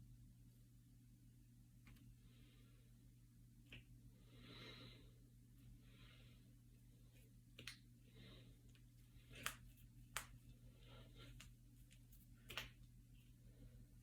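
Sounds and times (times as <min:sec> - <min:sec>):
faint low hum: 0:00.0 - 0:14.0
knuckles cracking: 0:07.6 - 0:07.9, 0:08.7 - 0:10.6, 0:11.2 - 0:12.9.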